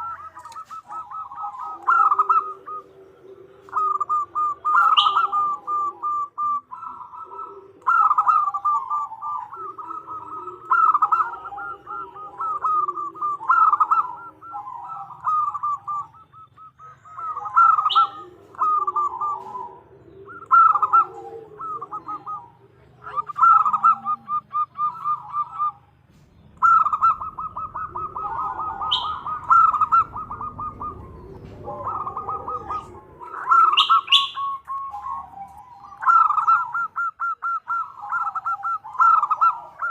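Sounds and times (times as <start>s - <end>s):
dove rattling coos: 0.0s - 39.9s.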